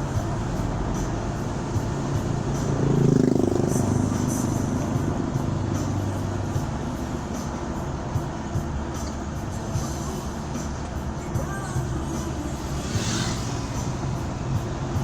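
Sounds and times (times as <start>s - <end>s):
traffic noise: 0.0s - 15.0s
vehicle engine: 0.0s - 15.0s.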